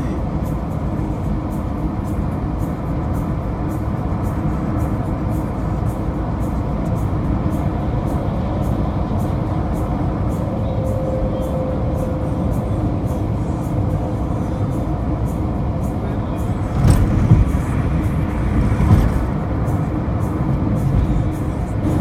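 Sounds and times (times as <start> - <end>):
tyre and road rumble: 16.2 - 22.0.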